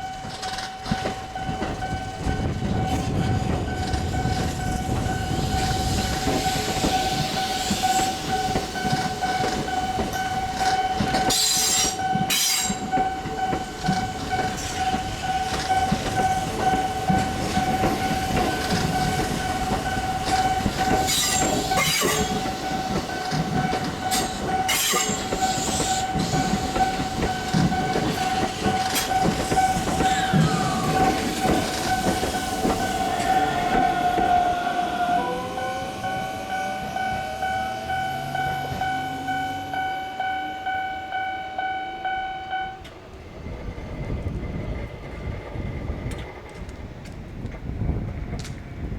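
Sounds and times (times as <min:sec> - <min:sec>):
train wheels rumbling on rails: 0:00.0 - 0:41.2, 0:42.7 - 0:48.9
level crossing warning bell: 0:00.0 - 0:42.9
rail joint clacks: 0:00.0 - 0:48.9.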